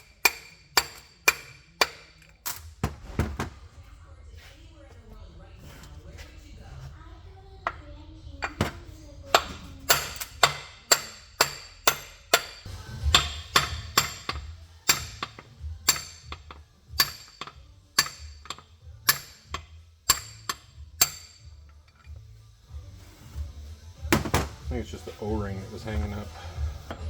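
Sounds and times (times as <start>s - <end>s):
hammer striking metal: 0.0s - 2.4s, 8.4s - 21.6s.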